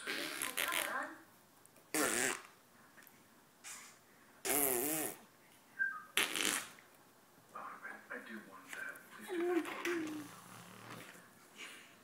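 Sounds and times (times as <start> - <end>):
warbling fart noises: 0.0 - 1.0, 1.9 - 2.5, 3.7 - 5.2, 6.2 - 6.8, 9.6 - 11.1.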